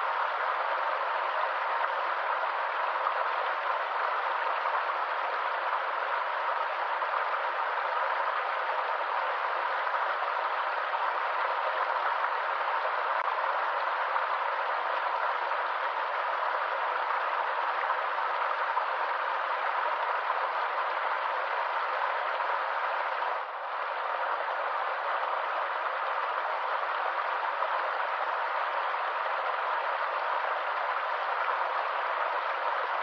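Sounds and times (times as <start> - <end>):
stream water running: 0.0 - 33.0.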